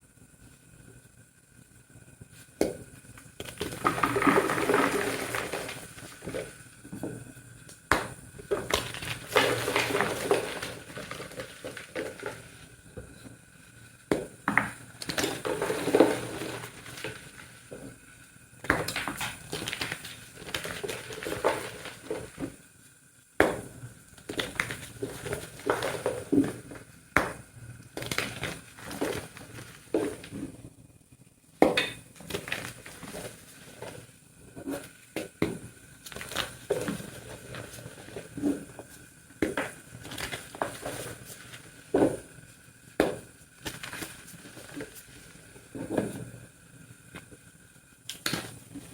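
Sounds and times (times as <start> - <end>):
chalk crunching and crumbling: 8.5 - 12.7, 14.5 - 17.9, 18.7 - 22.5, 24.2 - 27.4, 28.0 - 30.5.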